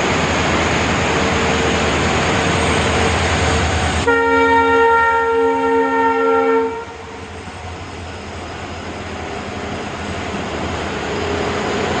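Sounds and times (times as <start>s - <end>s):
train horn: 4.0s - 7.2s.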